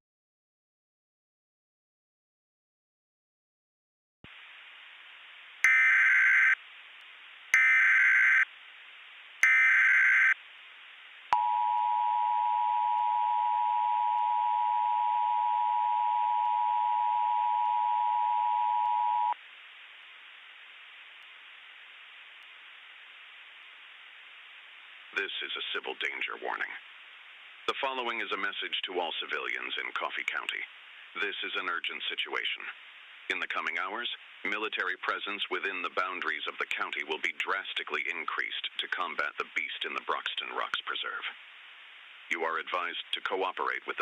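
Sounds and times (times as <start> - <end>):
faint steady hiss: 4.2 - 44.0
two-tone attention signal: 5.7 - 6.6, 7.6 - 8.4, 9.4 - 10.4.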